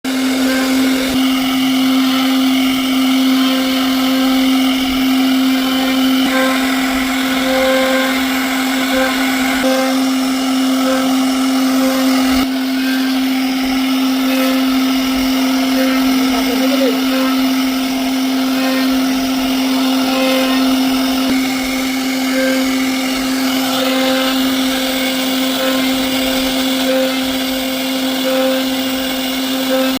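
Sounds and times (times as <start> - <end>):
bit cutting into wood: 0.0 - 30.0
router spindle whining: 0.0 - 30.0.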